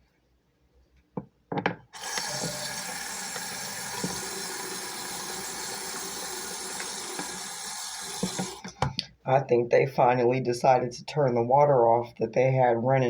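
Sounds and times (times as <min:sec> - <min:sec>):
water running into sink: 0:02.0 - 0:08.8.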